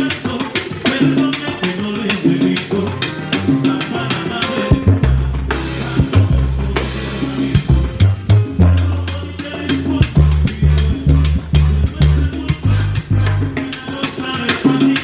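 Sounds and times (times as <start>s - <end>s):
drum kit and percussion beat: 0.0s - 15.0s
deep sustained bass notes: 4.7s - 13.6s.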